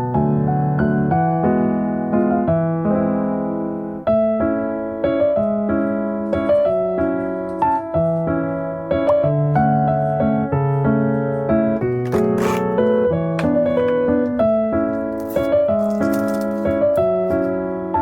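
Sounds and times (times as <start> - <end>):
gentle electric piano melody: 0.0 - 18.0.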